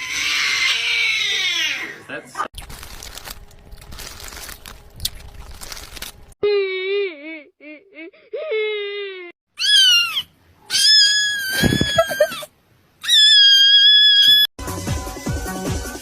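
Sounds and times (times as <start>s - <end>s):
cat yowling: 9.6s - 14.5s.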